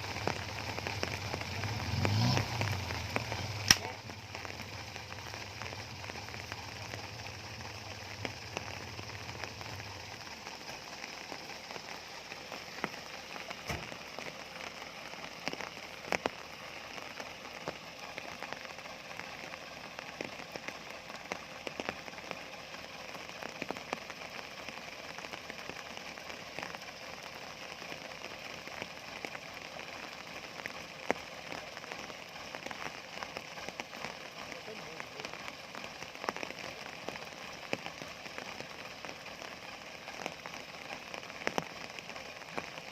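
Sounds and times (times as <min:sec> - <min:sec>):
raindrops ticking: 0:00.0 - 0:42.9
steady rain hiss: 0:00.0 - 0:42.9.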